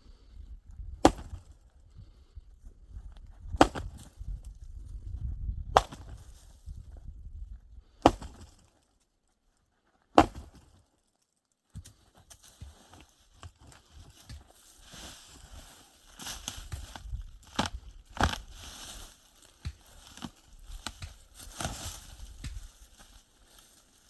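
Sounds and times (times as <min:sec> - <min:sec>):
dry wood being chopped: 0:01.0 - 0:01.5, 0:03.4 - 0:04.2, 0:05.7 - 0:06.3, 0:08.0 - 0:08.7, 0:10.2 - 0:10.8, 0:11.7 - 0:14.6, 0:16.2 - 0:23.1.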